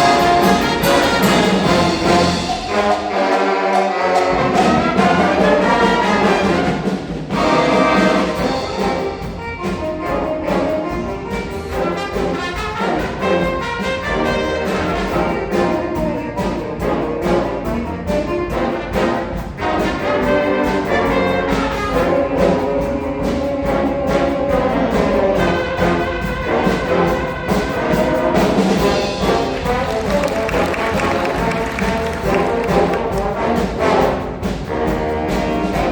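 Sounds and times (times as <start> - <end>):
drum hits: 0.0 - 3.2, 24.6 - 35.9
brass chords: 0.0 - 35.9.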